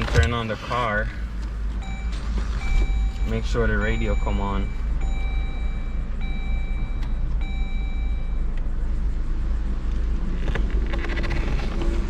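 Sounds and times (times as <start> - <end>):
car engine idling: 0.0 - 10.2
electronic beeps: 1.8 - 8.6.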